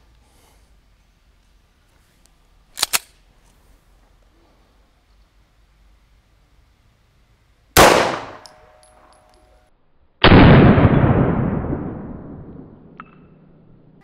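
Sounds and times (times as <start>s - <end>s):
pistol shots: 7.8s - 8.8s.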